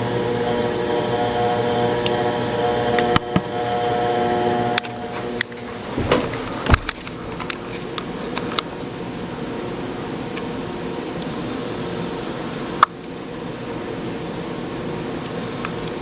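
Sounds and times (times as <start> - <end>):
ceiling fan motor humming: 0.0 - 16.0
knocks: 5.5 - 7.7.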